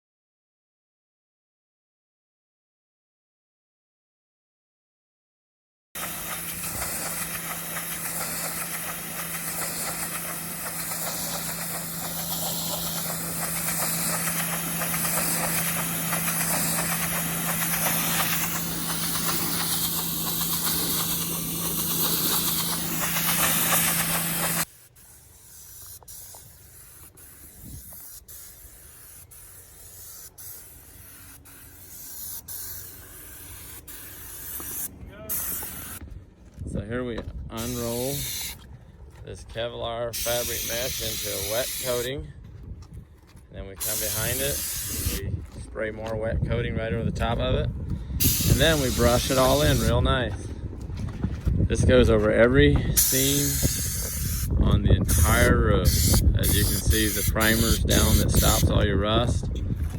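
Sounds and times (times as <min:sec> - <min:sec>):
sprayer hissing: 0:06.0 - 0:36.0, 0:37.6 - 0:38.6, 0:40.1 - 0:42.2, 0:43.8 - 0:45.5, 0:48.2 - 0:50.4, 0:52.8 - 0:58.9
constant hum: 0:06.0 - 0:59.9.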